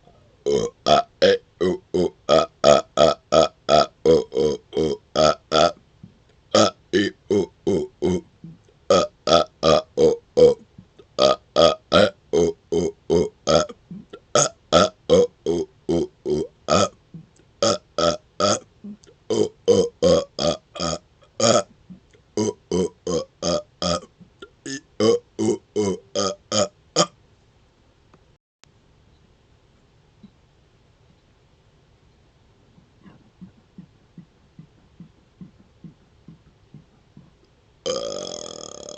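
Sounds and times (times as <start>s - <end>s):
man burping: 0.4s - 5.8s, 6.5s - 10.6s, 11.2s - 17.0s, 17.6s - 21.7s, 22.4s - 27.2s, 37.8s - 38.9s.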